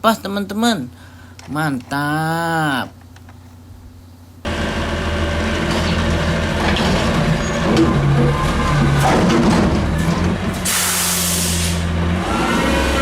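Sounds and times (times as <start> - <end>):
electronic toy truck engine rumble: 4.5 - 13.0.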